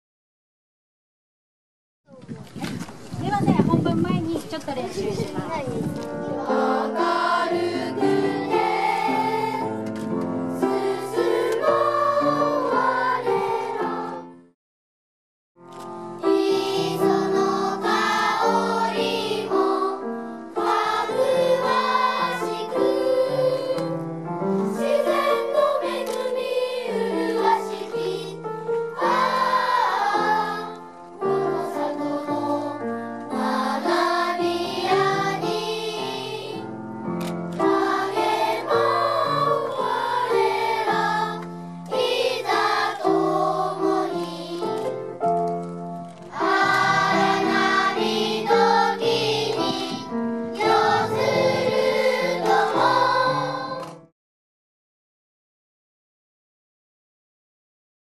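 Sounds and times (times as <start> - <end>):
grand piano accompaniment: 5.2 - 14.5, 15.6 - 54.1
children's choir singing: 6.3 - 9.9, 10.6 - 14.4, 16.2 - 36.7, 37.5 - 45.0, 46.3 - 54.0.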